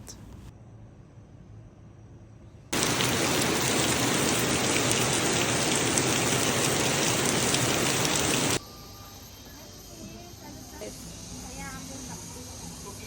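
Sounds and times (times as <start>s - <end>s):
rush of falling water: 2.8s - 8.6s.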